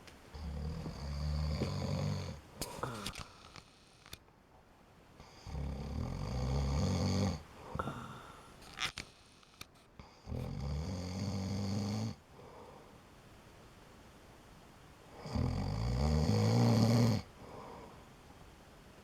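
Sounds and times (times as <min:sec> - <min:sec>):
quiet breathing: 0:00.0 - 0:04.2, 0:05.1 - 0:13.6, 0:15.0 - 0:15.7, 0:16.6 - 0:18.7
low rattling snores: 0:00.4 - 0:04.1, 0:05.2 - 0:09.6, 0:10.2 - 0:12.2, 0:15.2 - 0:17.3.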